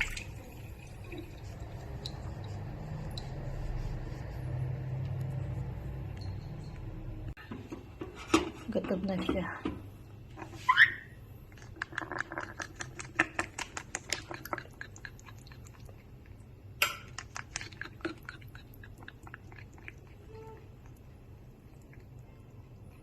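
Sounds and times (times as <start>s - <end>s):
baby parrot squeaky call: 10.7s - 11.1s
beak clicking and smacking: 11.5s - 22.2s.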